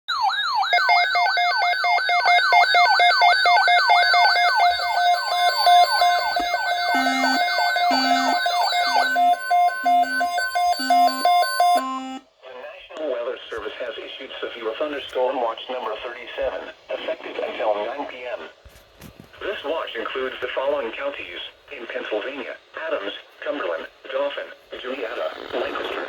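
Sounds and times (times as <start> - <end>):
electronic alarm wail: 0.1 - 12.2
steady alarm tone: 0.2 - 12.3
low beeps: 2.1 - 12.2.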